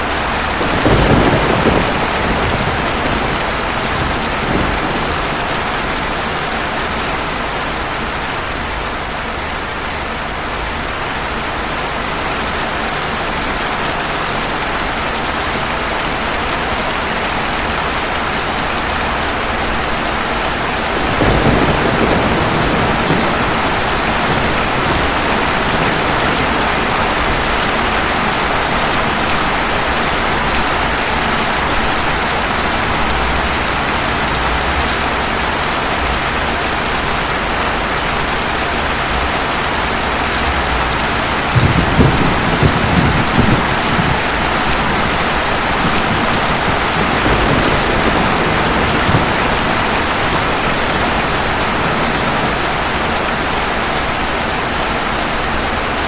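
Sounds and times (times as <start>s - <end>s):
steady rain: 0.0s - 56.0s
low thunder rumble: 0.1s - 6.7s, 20.8s - 35.4s, 39.2s - 53.0s.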